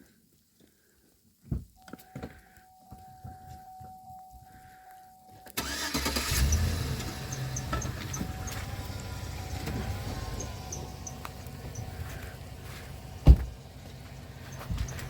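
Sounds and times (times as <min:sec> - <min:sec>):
car engine starting and idling: 0:05.5 - 0:15.0.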